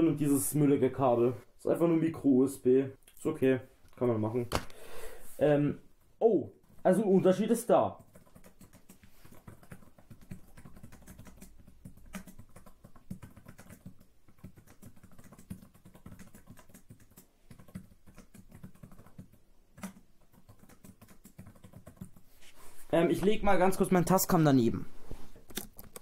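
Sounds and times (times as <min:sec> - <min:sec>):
keyboard typing: 0:07.9 - 0:22.3, 0:25.5 - 0:26.0.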